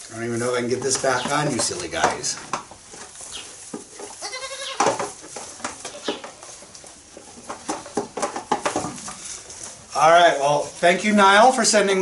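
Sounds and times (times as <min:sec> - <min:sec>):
rustling and clicking: 0:00.0 - 0:10.0
young goat bleating: 0:04.2 - 0:04.9.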